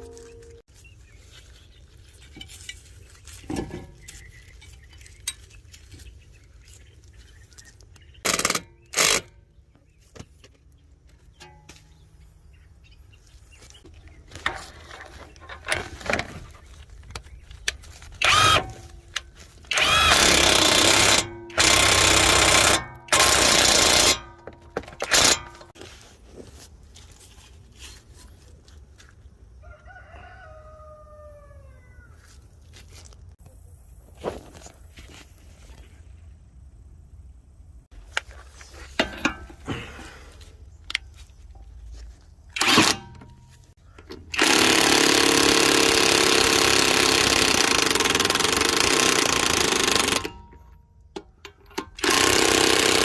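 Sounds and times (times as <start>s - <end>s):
impact wrench bursts: 8.2s - 9.3s, 18.2s - 19.1s, 19.7s - 25.8s, 42.6s - 43.3s, 44.2s - 50.6s, 51.7s - 53.0s.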